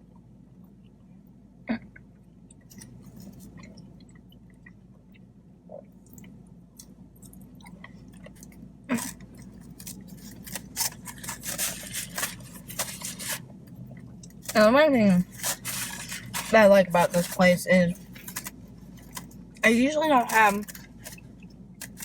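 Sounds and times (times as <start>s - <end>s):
chewing crunchy food: 2.0s - 22.0s.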